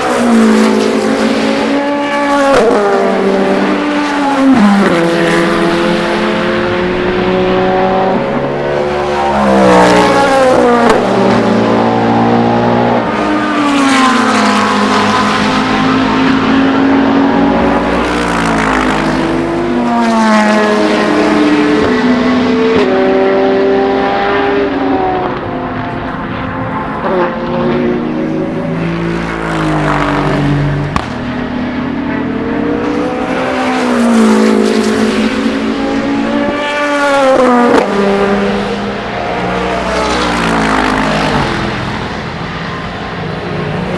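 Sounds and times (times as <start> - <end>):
race cars passing: 0.0 - 43.9.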